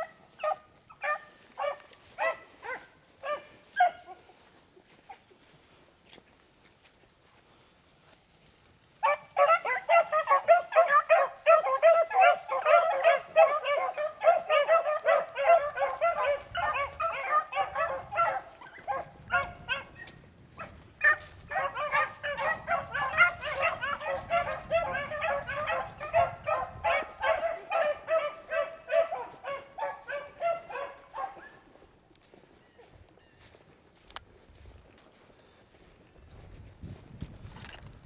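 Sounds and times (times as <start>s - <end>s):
pack of dogs baying: 0.0s - 5.4s, 8.9s - 33.6s.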